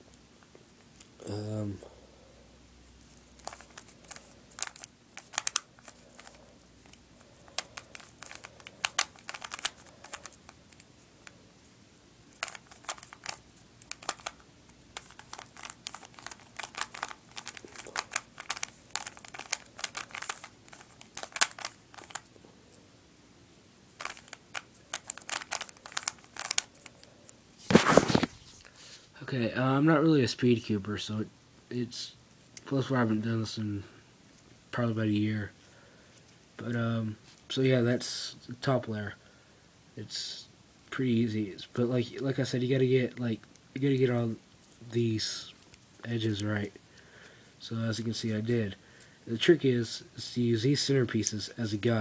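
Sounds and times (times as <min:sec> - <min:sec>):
puzzle cube layers clacking: 0:03.3 - 0:10.9, 0:12.3 - 0:22.3, 0:24.0 - 0:27.1.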